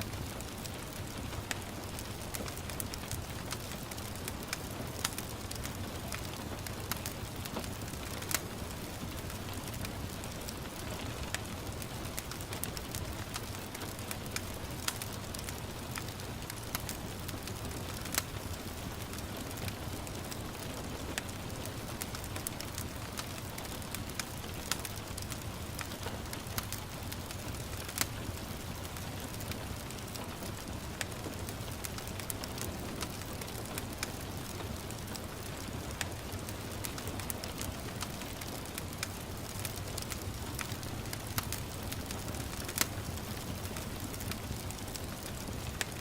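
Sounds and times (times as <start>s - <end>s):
gentle rain hiss: 0.0s - 46.0s
wood fire crackling and popping: 0.0s - 46.0s.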